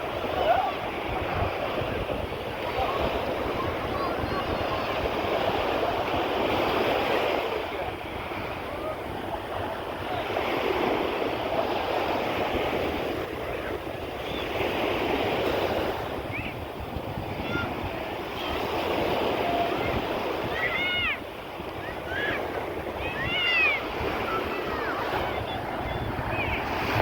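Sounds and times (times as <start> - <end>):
surf washing onto beach: 0.0 - 27.0
wind rumbling on microphone: 0.0 - 27.0.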